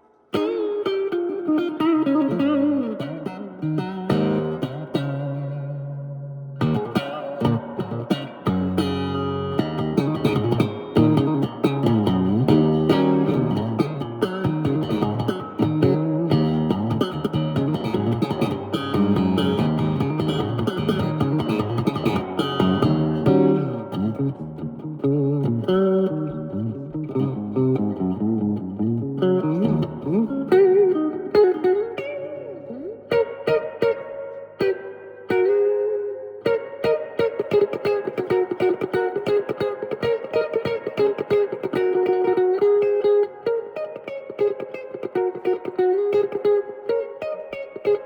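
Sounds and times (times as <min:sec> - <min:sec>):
electric guitar playing: 0:00.0 - 0:48.0.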